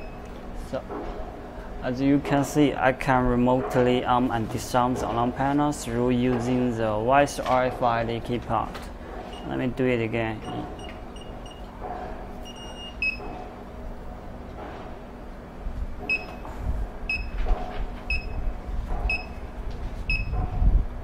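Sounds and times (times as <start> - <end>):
regular electronic beep: 0.0 - 0.3, 9.3 - 9.6, 10.4 - 11.7, 12.4 - 13.4, 16.1 - 16.5, 17.1 - 17.4, 18.1 - 18.5, 19.1 - 19.5, 20.1 - 20.4
alarm keypad key-press beeps: 10.4 - 11.7, 12.4 - 13.3, 16.1 - 16.4, 17.1 - 17.4, 18.1 - 18.4, 19.1 - 19.4, 20.1 - 20.4.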